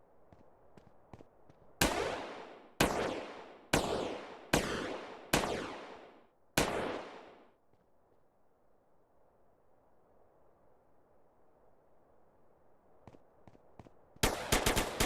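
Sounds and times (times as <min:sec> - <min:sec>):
sharp bangs with reverberation: 0:01.8 - 0:07.5, 0:14.2 - 0:15.0.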